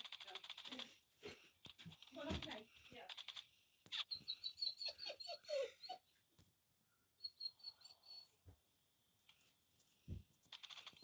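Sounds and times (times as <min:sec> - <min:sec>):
high bird-like chirping: 0:03.1 - 0:05.4.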